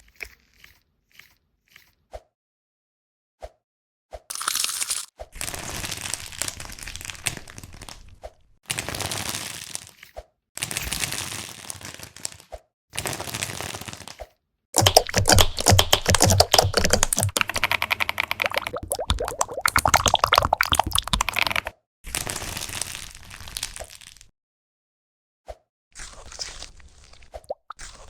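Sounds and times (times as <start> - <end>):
rapid crackling and popping: 14.8 - 21.7
squishy material being squeezed: 14.8 - 21.7.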